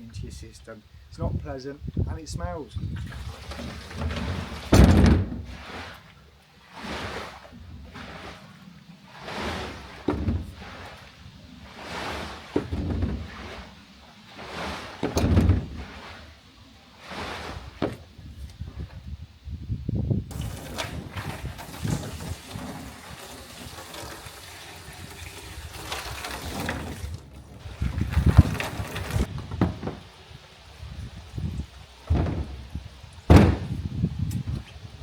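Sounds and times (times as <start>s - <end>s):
water swishing in a plastic tank: 2.3s - 35.0s
hollow thuds from tank: 3.0s - 6.0s, 9.2s - 13.8s, 14.4s - 16.4s, 17.1s - 19.1s, 20.3s - 24.4s, 25.0s - 34.7s.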